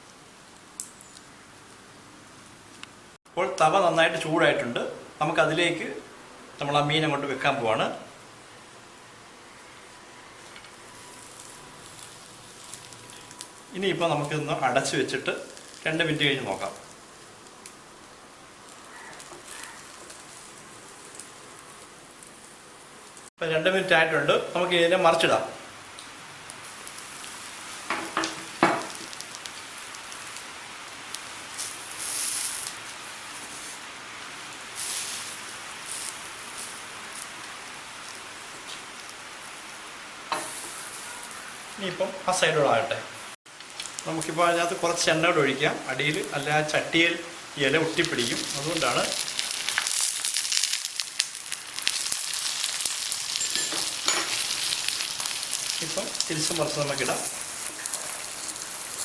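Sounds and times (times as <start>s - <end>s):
fish parcels sizzling on a griddle: 9.6s - 23.3s, 24.4s - 59.0s
utensils knocking: 53.4s - 54.4s.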